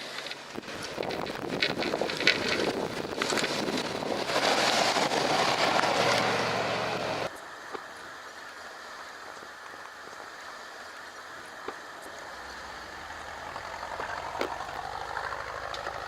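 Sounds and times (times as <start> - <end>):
snowplow truck running: 0.0 - 16.0
wind buffeting microphone: 0.4 - 6.5.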